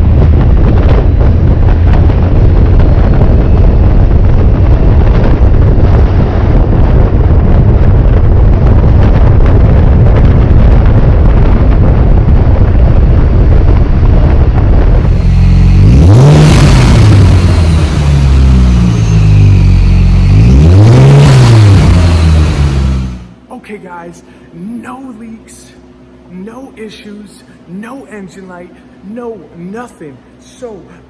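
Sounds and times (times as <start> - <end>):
wind buffeting microphone: 0.0 - 23.4
car engine revving: 14.8 - 23.5.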